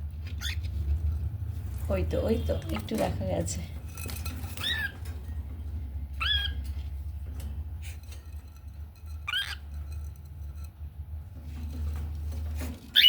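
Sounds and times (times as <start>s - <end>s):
steady low hum: 0.0s - 12.9s
cockatiel chirping: 0.4s - 0.7s, 4.5s - 5.0s, 6.2s - 6.6s, 9.2s - 9.7s.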